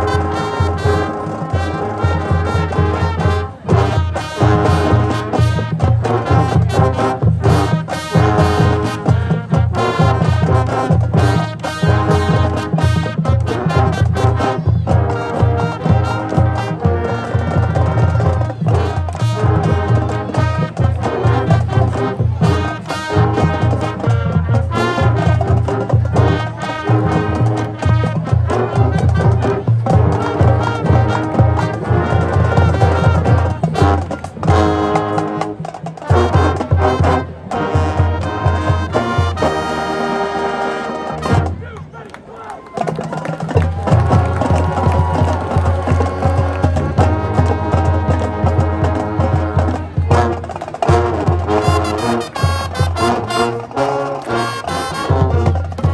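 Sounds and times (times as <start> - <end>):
steady drum beat: 0.0 - 40.6, 42.8 - 55.9
marching band brass: 0.0 - 55.9.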